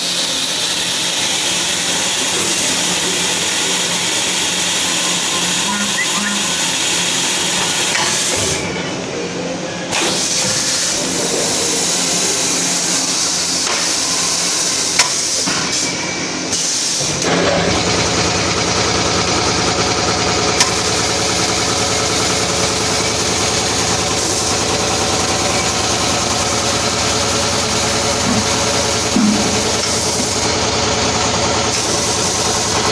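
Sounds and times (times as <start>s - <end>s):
motor humming: 1.6s - 8.8s, 20.6s - 32.9s.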